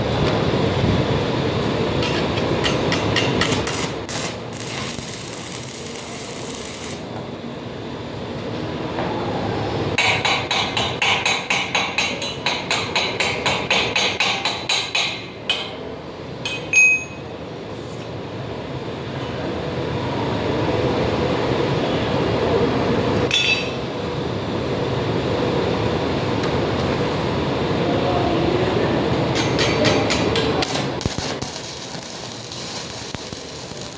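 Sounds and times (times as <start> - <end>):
steady rumbling noise: 0.0 - 8.8, 23.9 - 33.9
hammer striking metal: 10.0 - 15.8, 29.3 - 31.4.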